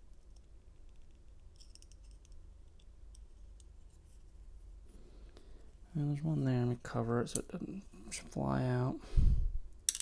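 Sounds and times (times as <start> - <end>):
faint metallic clicks and scrapes: 0.0 - 5.8.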